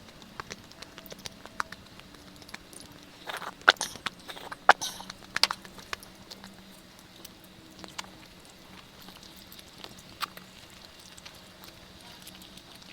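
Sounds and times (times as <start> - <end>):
quiet chewing: 0.0 - 12.9
wet mouth clicks: 2.8 - 6.5.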